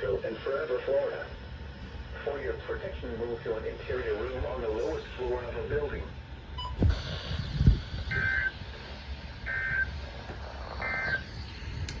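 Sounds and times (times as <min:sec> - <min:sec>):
steady low rumble: 0:00.0 - 0:12.0
dull low thumps: 0:06.6 - 0:08.4
two-tone digital data screech: 0:08.1 - 0:08.5.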